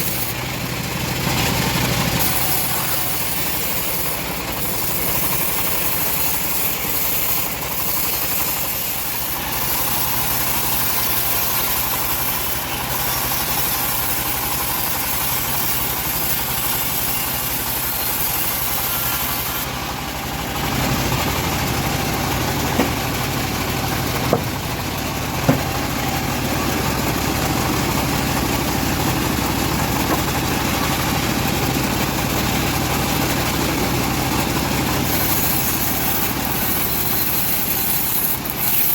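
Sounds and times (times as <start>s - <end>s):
bandsaw mill engine hum: 0.0s - 38.9s.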